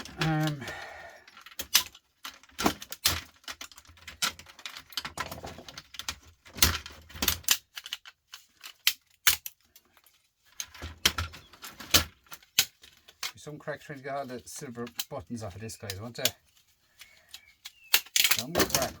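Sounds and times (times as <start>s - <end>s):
hard plastic clicking and knocking: 1.4s - 8.0s.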